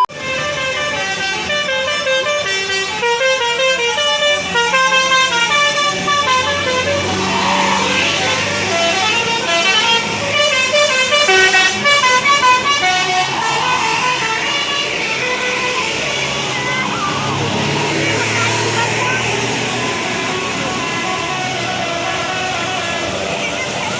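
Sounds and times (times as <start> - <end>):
bus engine hum: 0.0 - 23.9
melody bus horn: 0.0 - 23.9.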